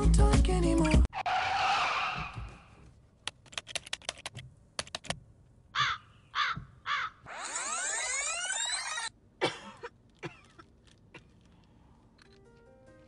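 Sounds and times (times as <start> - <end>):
sharp typing clicks: 3.3 - 5.2
crow cawing: 5.8 - 7.3.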